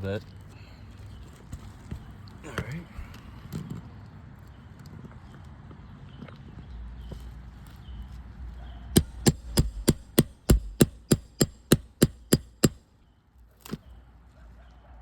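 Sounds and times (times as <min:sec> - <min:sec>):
roofing hammer tapping: 0:09.0 - 0:12.8.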